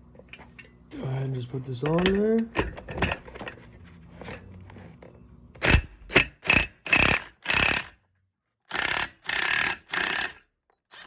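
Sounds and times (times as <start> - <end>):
impact driver hammering: 5.6 - 7.9.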